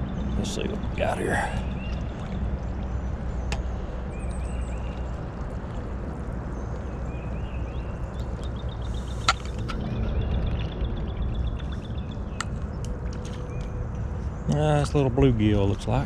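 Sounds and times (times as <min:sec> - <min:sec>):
water noise: 0:00.0 - 0:16.0.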